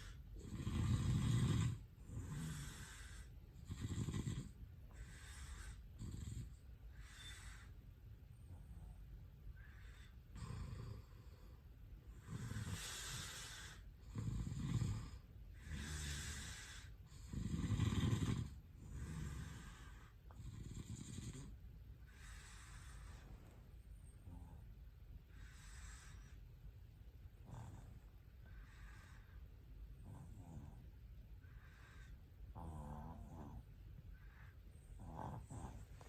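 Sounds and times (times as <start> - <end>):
loud rattling snore: 0.0 - 7.1, 12.2 - 21.6, 32.5 - 33.6, 35.0 - 35.9
soft airy breath: 0.0 - 17.4, 18.5 - 32.6, 33.5 - 36.0.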